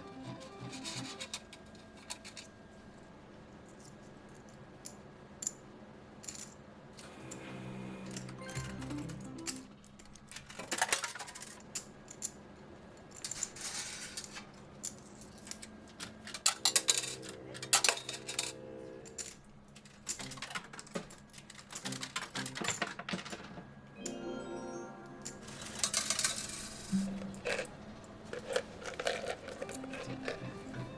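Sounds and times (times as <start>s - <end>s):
electronic slot machine tunes: 0.0s - 1.4s, 7.4s - 9.9s, 24.0s - 28.3s, 29.6s - 30.9s
coins dropping and jingling: 16.4s - 19.4s, 25.2s - 30.9s.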